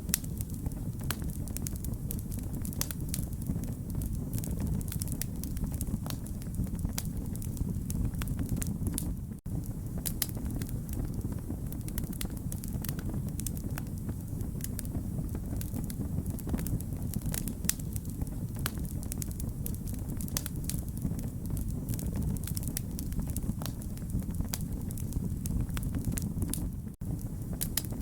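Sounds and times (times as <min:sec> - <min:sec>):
low rumble of burning fire: 0:00.0 - 0:28.0
wood fire crackling and popping: 0:00.0 - 0:28.0.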